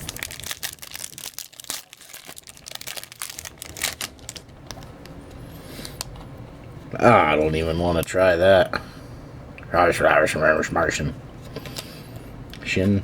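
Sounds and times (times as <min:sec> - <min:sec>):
plastic foil wrapper crinkling: 0:00.0 - 0:04.9.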